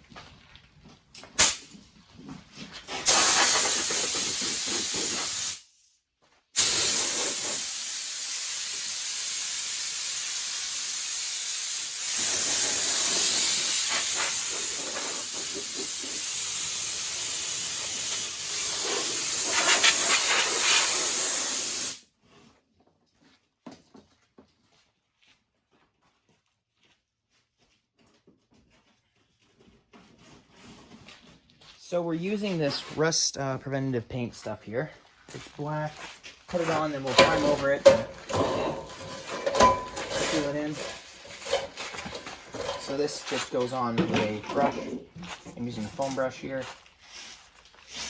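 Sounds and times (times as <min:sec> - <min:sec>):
compressed air blow gun hissing: 0:03.0 - 0:05.7, 0:06.6 - 0:22.0.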